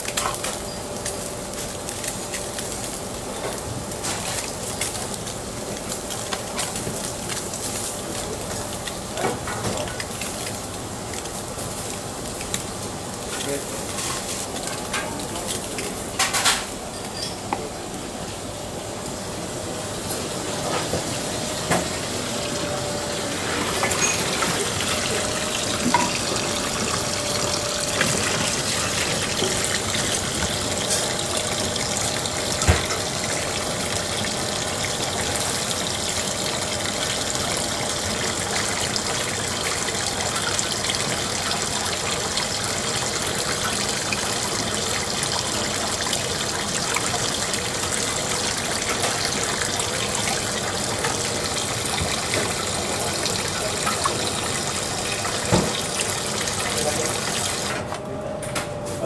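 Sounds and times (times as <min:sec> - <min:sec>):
running water: 0:19.7 - 0:58.0.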